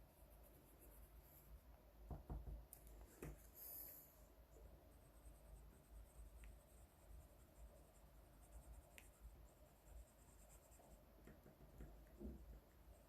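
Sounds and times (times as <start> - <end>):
soft ticks: 6.4 - 6.6.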